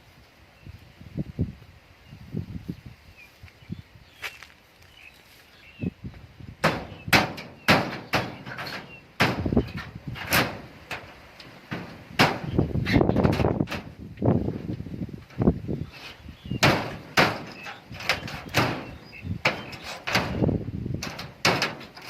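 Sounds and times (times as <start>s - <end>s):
sharp knocks and bangs: 6.6s - 14.0s, 16.5s - 22.0s.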